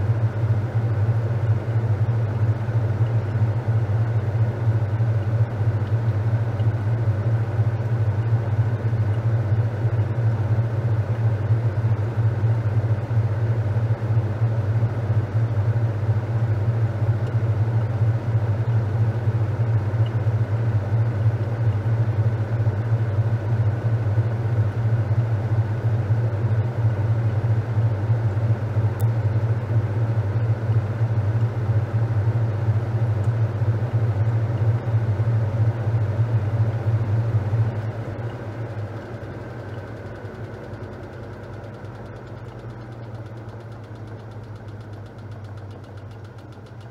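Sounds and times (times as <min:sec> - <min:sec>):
washing machine humming: 0:00.0 - 0:46.9.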